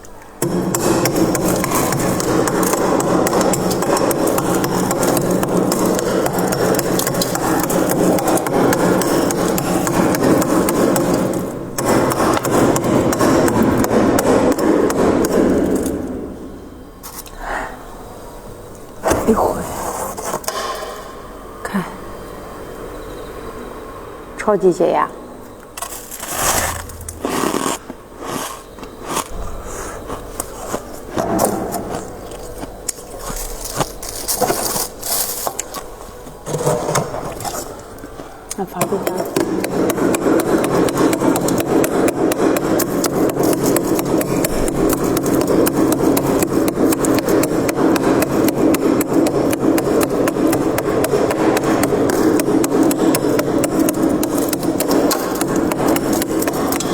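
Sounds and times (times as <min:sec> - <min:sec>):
freezer frost scraped and crunched: 0:00.8 - 0:13.8, 0:19.4 - 0:20.5, 0:25.8 - 0:38.1, 0:38.7 - 0:56.9.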